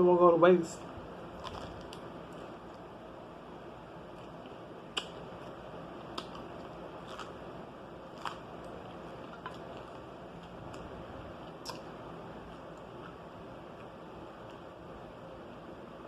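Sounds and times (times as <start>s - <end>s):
person chewing pizza: 1.3s - 2.9s, 4.0s - 14.7s
sharp crunches and mouth clicks: 1.4s - 2.8s, 4.1s - 7.4s, 8.1s - 13.2s.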